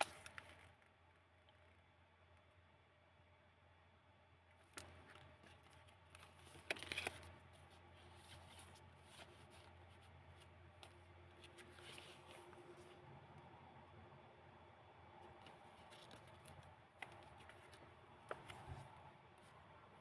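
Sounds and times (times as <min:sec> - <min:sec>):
paper pages rustling: 0:04.7 - 0:13.0, 0:15.2 - 0:19.6.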